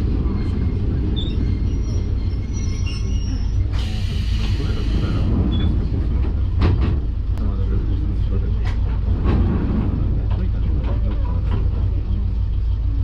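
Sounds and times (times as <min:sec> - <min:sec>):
diesel railcar rumbling: 0:00.0 - 0:13.0.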